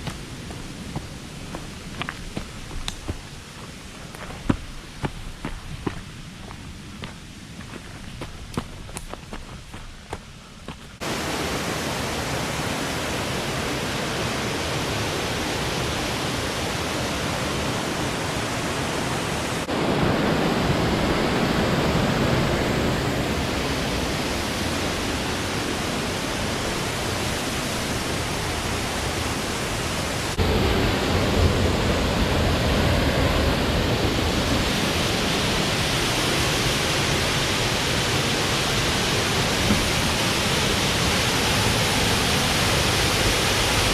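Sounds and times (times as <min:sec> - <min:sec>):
waterfall rushing: 0:11.0 - 0:43.9.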